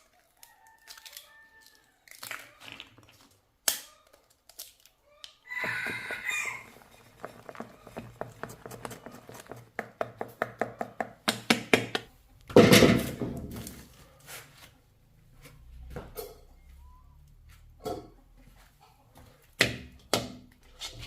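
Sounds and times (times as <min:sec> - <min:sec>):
knife chopping on cutting board: 0:07.2 - 0:12.0.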